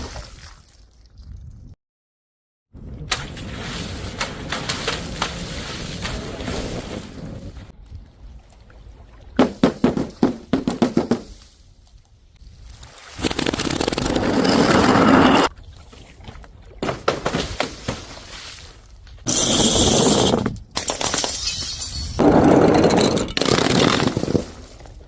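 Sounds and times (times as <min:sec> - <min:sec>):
rumbling scrape: 0:13.3 - 0:15.5, 0:19.3 - 0:20.6.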